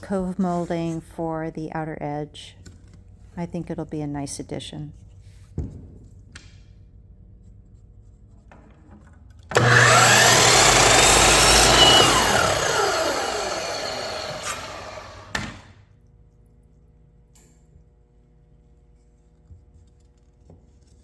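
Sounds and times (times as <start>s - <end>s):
power saw cutting wood: 9.5s - 15.7s.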